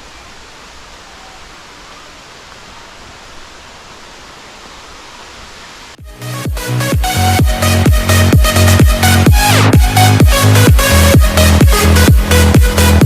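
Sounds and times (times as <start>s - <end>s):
waterfall rushing: 0.0s - 13.0s
electronic dance music: 6.0s - 13.0s.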